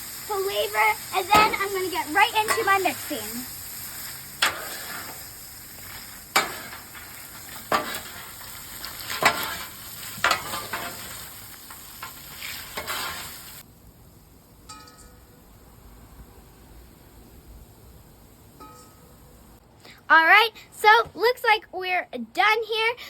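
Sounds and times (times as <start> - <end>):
snack mix sizzling on griddle: 0.0 - 15.2
spatula scraping steel griddle: 0.4 - 13.6.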